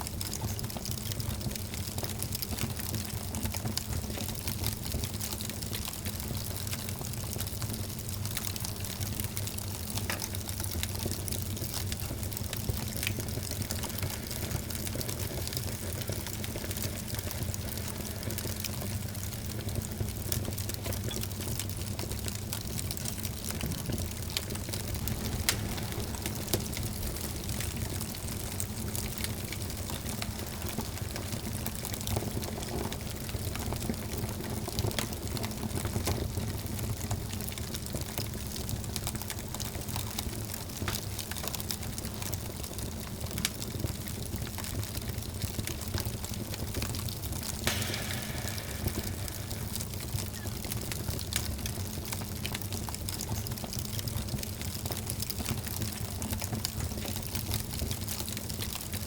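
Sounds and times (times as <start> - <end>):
wood fire crackling and hissing: 0.0 - 59.0
sharp pops of fire: 9.6 - 33.9, 47.3 - 53.2.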